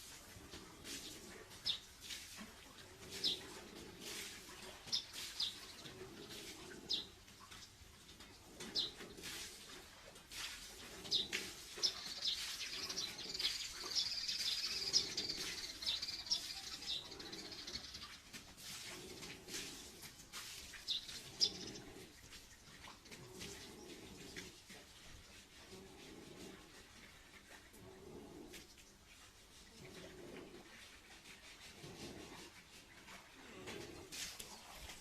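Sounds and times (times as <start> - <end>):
small birds chirping: 0.4 - 1.9, 2.8 - 9.8, 10.4 - 24.6.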